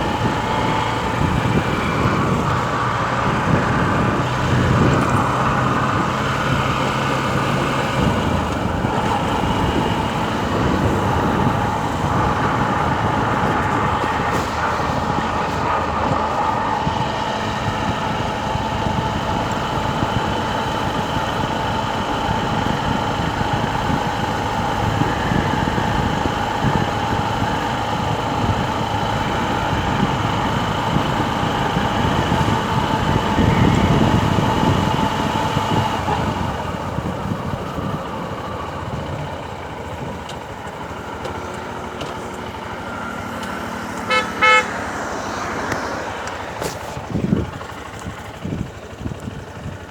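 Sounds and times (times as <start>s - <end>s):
motorcycle engine running: 0.0s - 49.9s
road noise: 0.0s - 49.9s
horn tooting: 35.6s - 37.0s, 43.2s - 47.1s.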